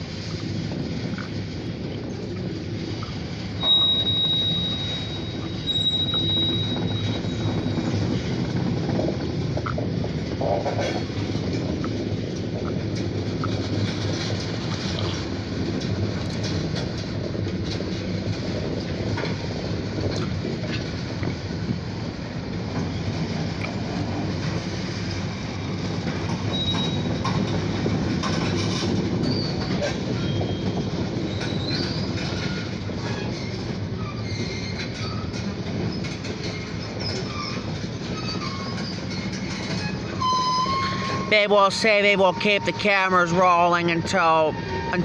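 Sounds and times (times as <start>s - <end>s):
train wheels rumbling on rails: 0.0s - 45.0s
wheels clicking over rail joints: 0.0s - 45.0s
high wheel squeals: 3.6s - 8.4s, 26.2s - 27.6s, 28.2s - 45.0s.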